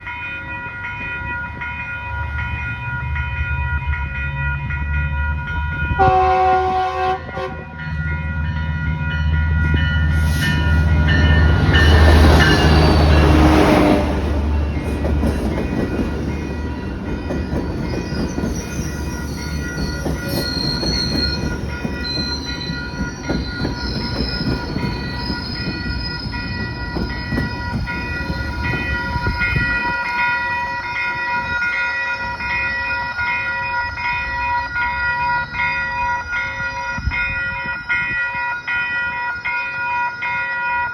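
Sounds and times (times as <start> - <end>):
rail noise: 0.0 - 40.9
locomotive engine rumble: 1.5 - 34.8
train horn blast: 5.9 - 7.9
wheels squealing: 17.2 - 29.7.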